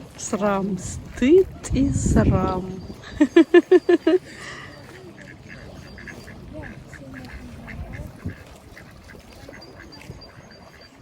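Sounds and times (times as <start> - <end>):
ducks quacking: 0.0 - 11.0.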